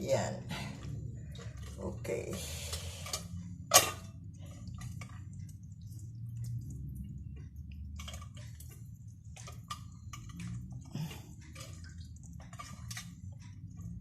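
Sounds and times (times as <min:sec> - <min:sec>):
steady low hum: 0:00.0 - 0:14.0
wet dripping: 0:03.0 - 0:14.0.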